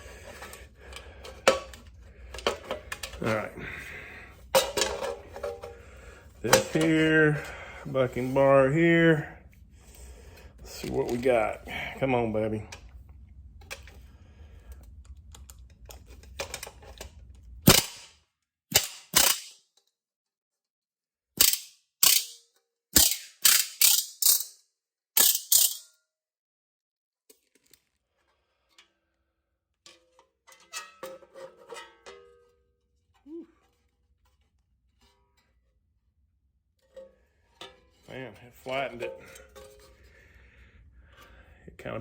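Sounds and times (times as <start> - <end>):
low steady hum: 0.0 - 17.9
faint metal handling clatter: 4.5 - 5.8
metallic rivet strikes: 17.7 - 18.1, 18.7 - 19.6, 21.4 - 22.4, 23.0 - 24.5, 25.2 - 25.9.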